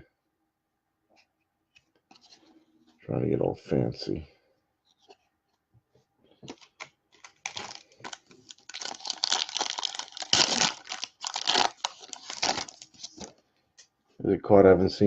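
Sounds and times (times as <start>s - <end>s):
foil wrapper tearing and crinkling: 6.6s - 13.3s.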